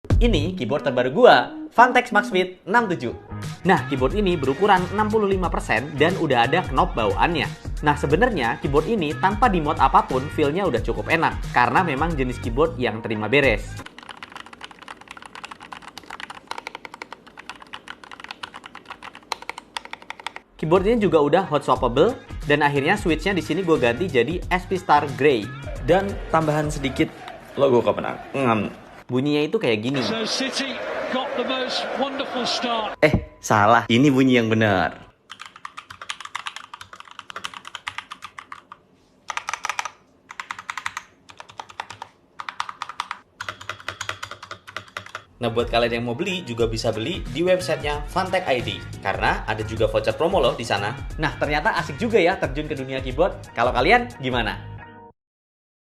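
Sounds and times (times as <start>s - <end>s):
mechanical keyboard typing: 13.8s - 20.5s, 35.3s - 45.3s.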